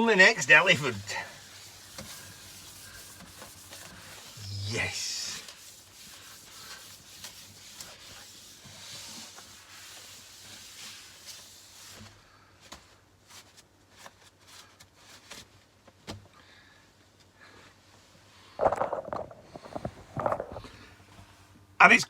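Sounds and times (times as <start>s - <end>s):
rubbing and rustling handling noise: 0.0s - 16.2s, 17.0s - 22.0s.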